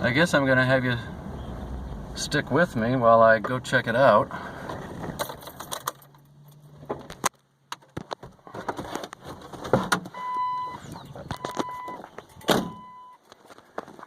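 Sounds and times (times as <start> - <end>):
car engine hum: 0.0 - 13.0
car warning chime beeping: 10.2 - 13.2.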